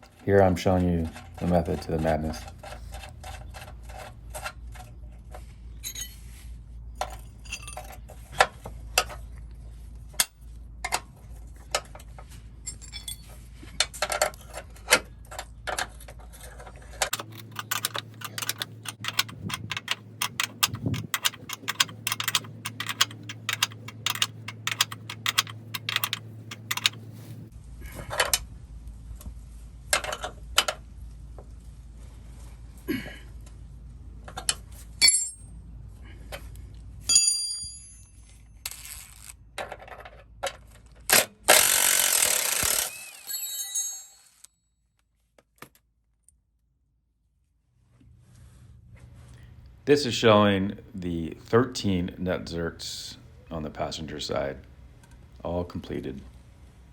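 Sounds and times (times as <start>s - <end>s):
metal tools clicking: 13.9s - 27.0s, 41.1s - 44.5s.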